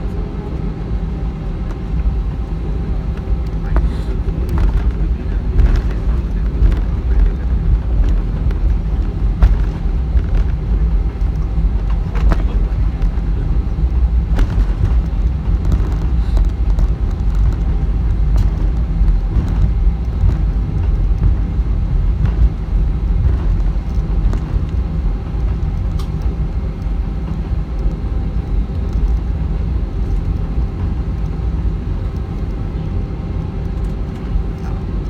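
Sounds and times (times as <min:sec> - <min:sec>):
airplane cabin engine rumble: 0:00.0 - 0:35.0.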